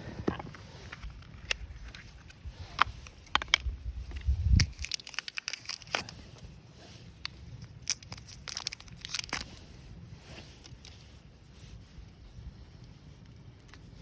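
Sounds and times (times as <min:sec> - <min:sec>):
crackling and crinkling clicks: 0:00.1 - 0:06.2, 0:07.2 - 0:09.5, 0:12.8 - 0:13.9.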